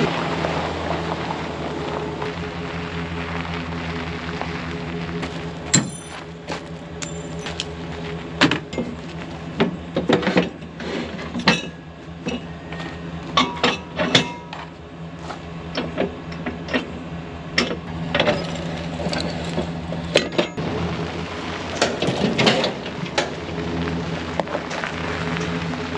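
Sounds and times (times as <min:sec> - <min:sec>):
steady low hum: 0:00.0 - 0:25.9
metal clanks and knocks: 0:05.2 - 0:07.8, 0:08.4 - 0:17.0.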